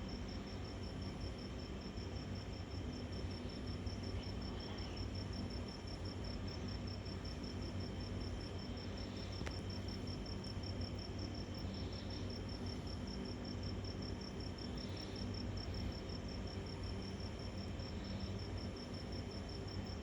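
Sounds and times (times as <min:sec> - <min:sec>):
cricket chirping: 0:00.0 - 0:20.0
steady low hum: 0:00.0 - 0:20.0.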